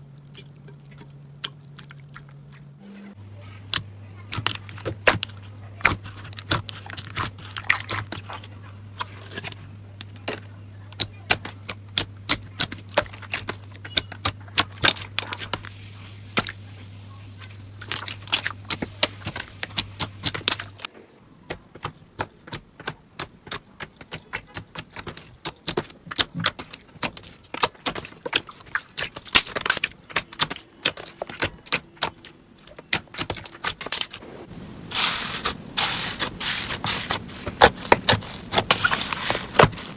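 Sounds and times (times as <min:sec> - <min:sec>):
low steady hum: 0:00.0 - 0:21.5, 0:33.8 - 0:39.9.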